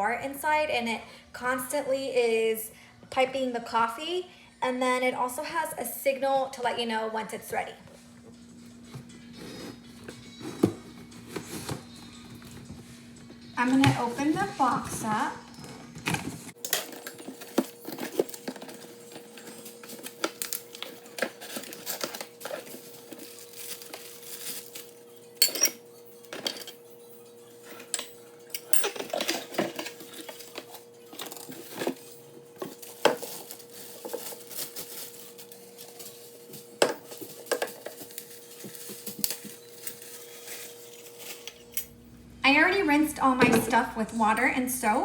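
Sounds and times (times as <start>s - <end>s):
metal parts clinking and knocking: 25.4s - 26.8s, 27.8s - 32.0s.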